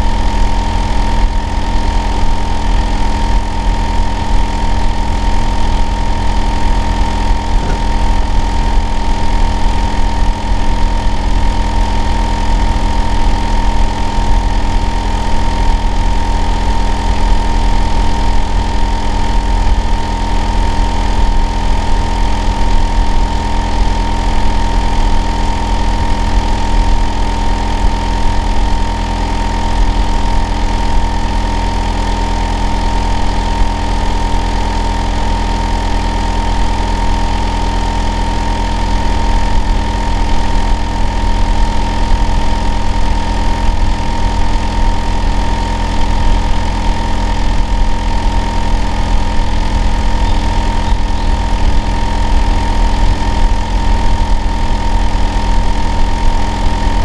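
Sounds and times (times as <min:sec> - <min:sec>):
air conditioner unit droning: 0:00.0 - 0:32.0.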